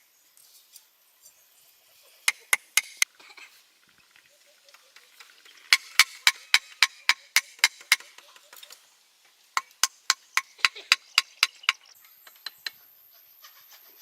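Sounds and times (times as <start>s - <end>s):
hand tool striking: 2.3s - 3.0s, 5.7s - 8.2s, 9.6s - 12.8s.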